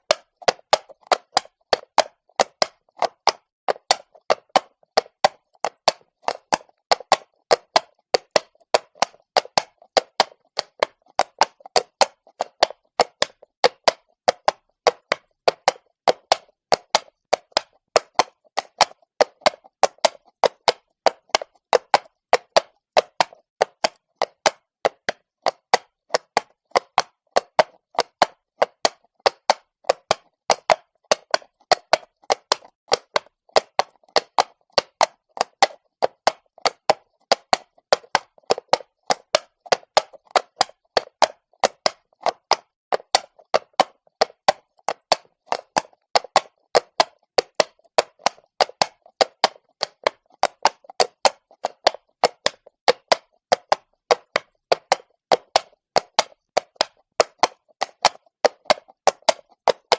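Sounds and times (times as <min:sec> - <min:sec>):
horse hooves on cobblestone: 0:00.0 - 0:59.9.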